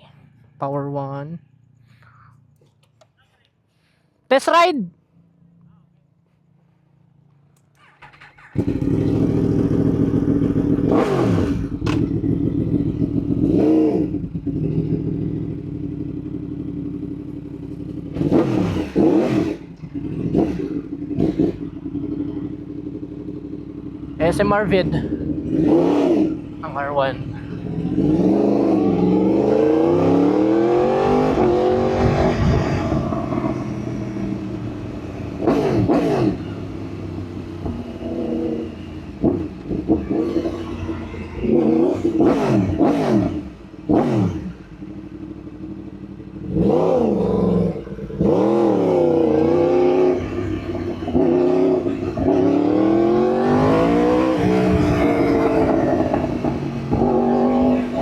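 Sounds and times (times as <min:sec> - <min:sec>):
motorcycle engine accelerating: 0:07.7 - 0:58.0
sharp high engine revs: 0:27.8 - 0:36.8, 0:37.9 - 0:44.6, 0:46.4 - 0:58.0.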